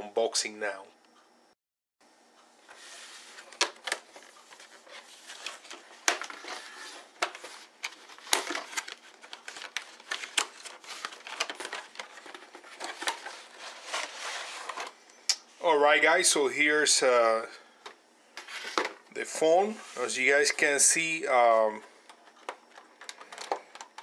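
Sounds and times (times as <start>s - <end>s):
packaging crinkling: 3.9s - 15.0s.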